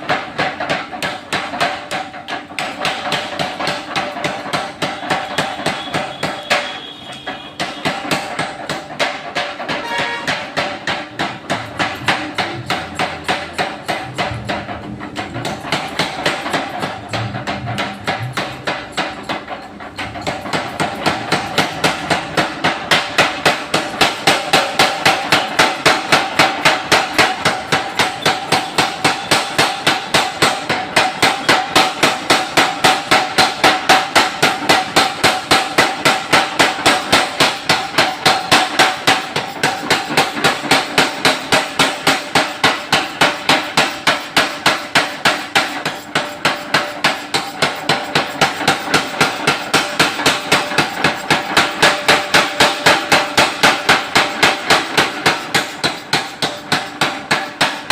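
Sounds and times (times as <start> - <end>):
power hammer blows: 0.0 - 57.9
metallic ring: 11.7 - 22.3.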